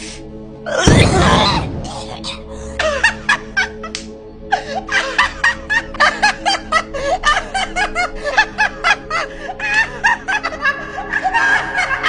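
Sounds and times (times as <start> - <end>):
background music: 0.0 - 12.0
person laughing: 0.8 - 9.0.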